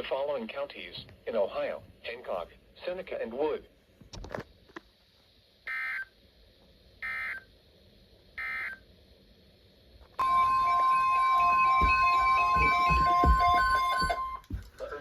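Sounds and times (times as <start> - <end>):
loud steady tone: 10.2 - 14.7.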